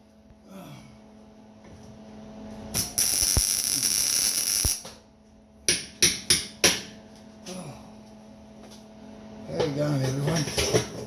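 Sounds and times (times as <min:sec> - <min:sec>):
steady low hum: 0:00.0 - 0:11.0
arc welding crackle: 0:02.7 - 0:04.9
short tack welds: 0:02.8 - 0:04.8.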